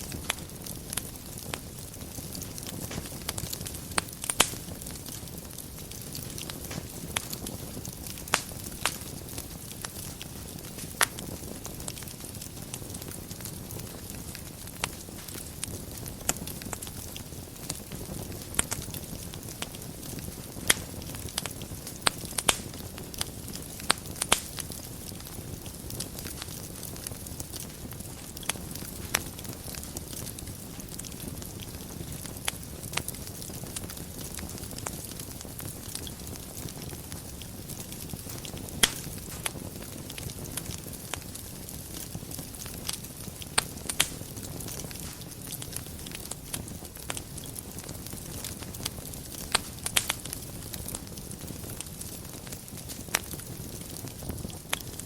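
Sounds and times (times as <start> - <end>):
fire crackling and popping: 0.0 - 55.0
fire flames rumbling: 0.0 - 55.0.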